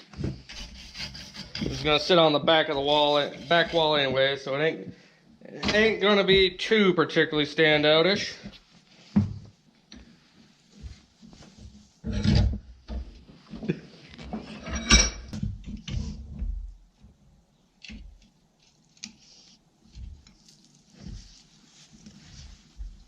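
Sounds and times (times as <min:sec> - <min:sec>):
metal clanks and scrapes: 0:00.0 - 0:02.2, 0:02.8 - 0:04.0, 0:12.0 - 0:13.1, 0:14.2 - 0:16.4.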